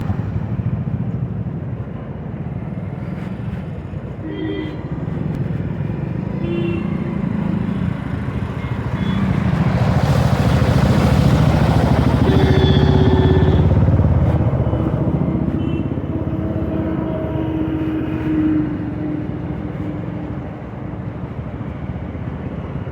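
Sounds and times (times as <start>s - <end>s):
road traffic: 0.0s - 22.9s.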